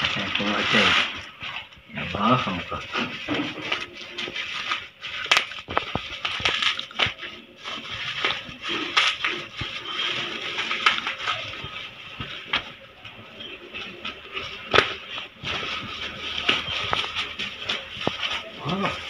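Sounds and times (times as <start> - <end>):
packaging tearing: 0.0 - 12.5
packaging crinkling and rustling: 0.0 - 19.0.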